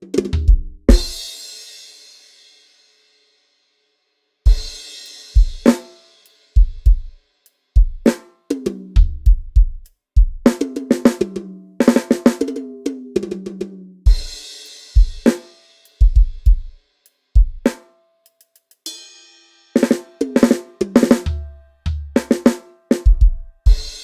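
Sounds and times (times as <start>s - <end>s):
snare drum strokes: 5.6s - 6.1s, 15.1s - 16.4s, 19.8s - 21.4s.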